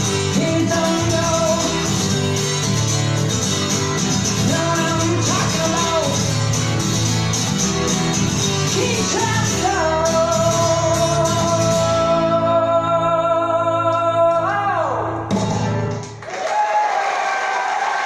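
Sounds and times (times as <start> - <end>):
band with guitar: 0.0 - 16.2.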